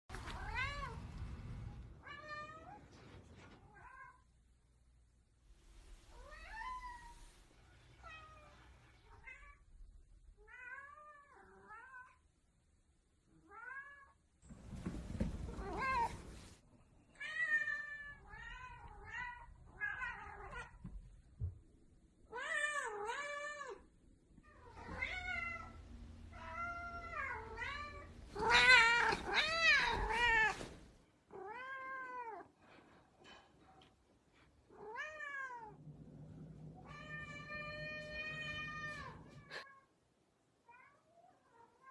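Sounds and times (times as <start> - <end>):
cat meowing: 24.5 - 30.6.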